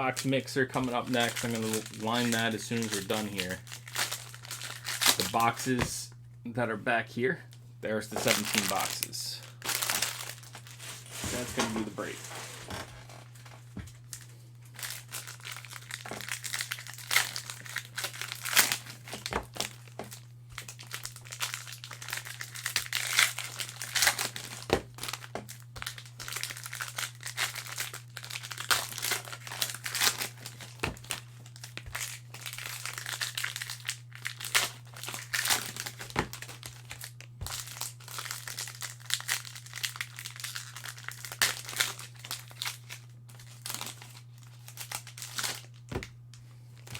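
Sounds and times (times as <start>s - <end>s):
plastic wrappers crinkling: 0.0s - 6.0s, 8.1s - 46.1s
steady low hum: 0.0s - 26.4s.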